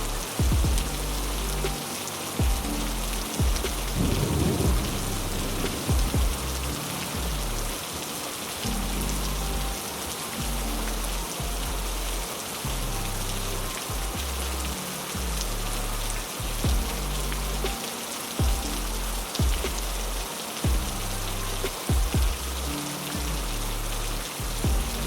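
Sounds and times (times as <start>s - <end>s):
heavy rain falling: 0.0s - 25.0s
low drone shifting pitch: 2.4s - 7.8s
brief low thumps: 3.4s - 6.6s.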